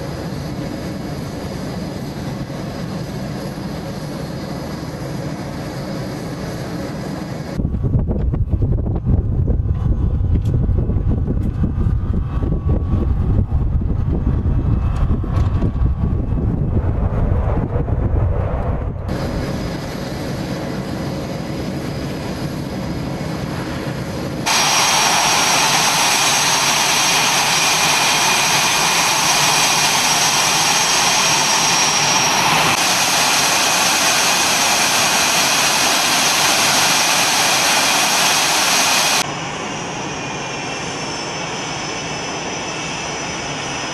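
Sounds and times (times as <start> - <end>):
jet engine crackling rumble: 0.0 - 43.9
high-pitched jet whine: 9.6 - 43.9.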